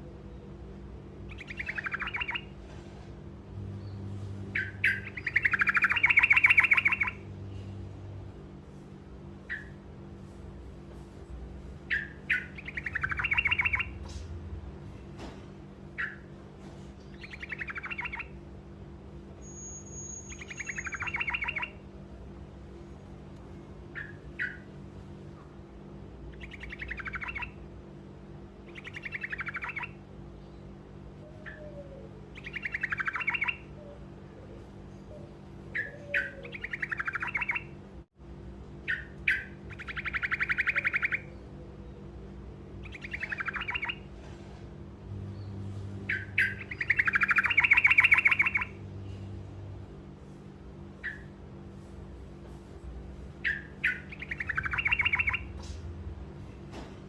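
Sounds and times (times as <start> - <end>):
bird singing rolling trills: 0.0 - 2.6, 3.6 - 8.6, 9.2 - 9.8, 11.8 - 14.0, 15.8 - 16.3, 17.0 - 22.1, 23.8 - 25.1, 25.8 - 37.8, 38.7 - 44.1, 45.0 - 49.4, 50.8 - 51.6, 53.2 - 55.6.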